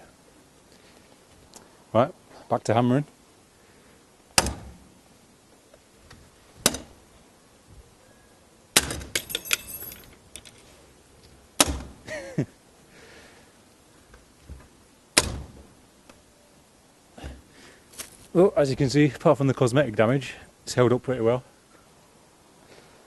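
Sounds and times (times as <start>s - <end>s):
rattle of small knocks: 8.8s - 10.7s.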